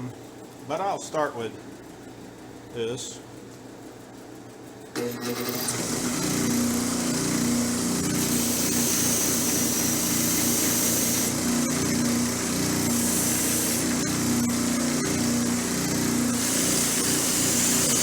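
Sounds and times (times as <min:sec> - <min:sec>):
wire wheel motor humming: 0:05.0 - 0:18.0.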